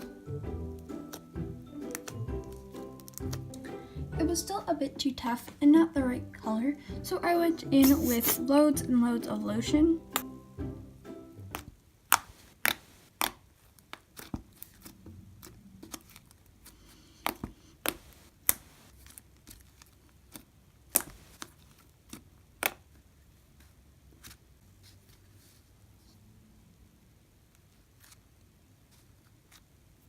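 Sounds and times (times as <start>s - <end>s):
slime clicking and popping: 11.5s - 14.8s, 20.3s - 21.5s, 22.1s - 22.9s.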